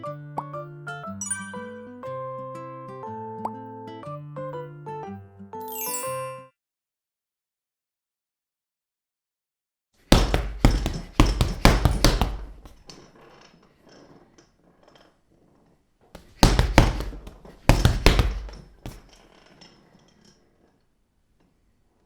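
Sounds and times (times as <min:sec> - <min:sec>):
heavy punch hits: 0:10.1 - 0:12.8, 0:16.2 - 0:19.1.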